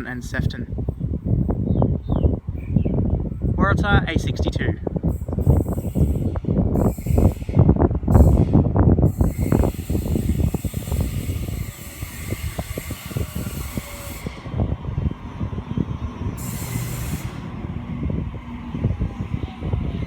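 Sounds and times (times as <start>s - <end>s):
low rumbling: 0.0s - 20.0s
air brakes hissing: 16.3s - 18.3s.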